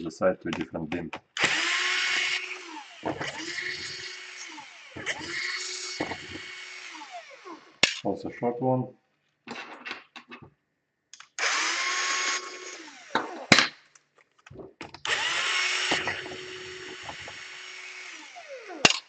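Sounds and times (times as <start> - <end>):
electric screwdriver whining: 1.2 - 7.8, 11.2 - 13.5, 15.0 - 19.0.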